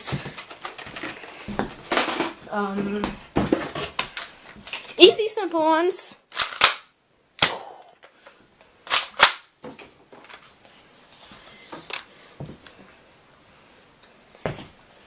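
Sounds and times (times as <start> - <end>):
toy blaster plastic clacks: 6.3 - 6.9, 8.9 - 9.4.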